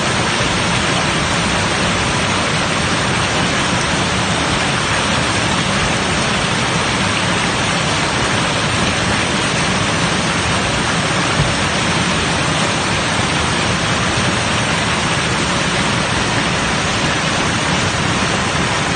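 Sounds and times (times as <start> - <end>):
water rushing over weir: 0.0 - 18.9
low thump: 11.3 - 11.6.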